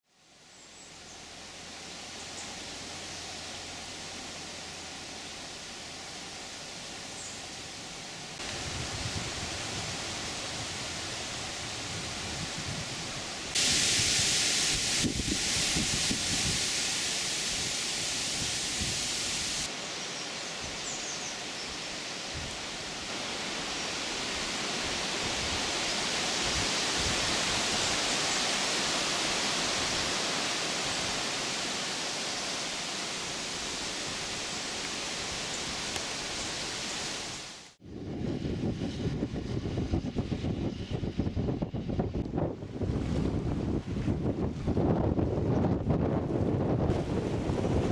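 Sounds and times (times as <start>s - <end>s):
steady rushing noise: 8.2s - 20.0s.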